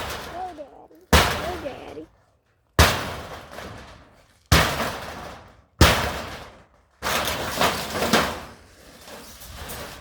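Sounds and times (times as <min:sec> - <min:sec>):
heavy impacts on barn: 0:00.0 - 0:02.0, 0:02.8 - 0:08.8
crashing and rattling: 0:02.8 - 0:10.0.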